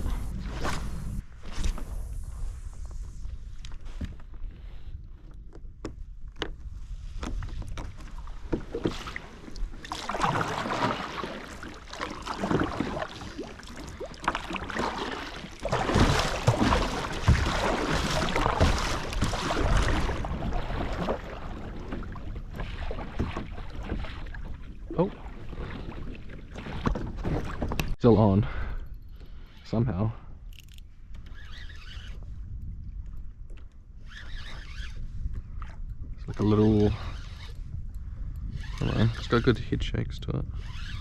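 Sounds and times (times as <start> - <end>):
water splashing around a kayak: 0.0 - 28.0.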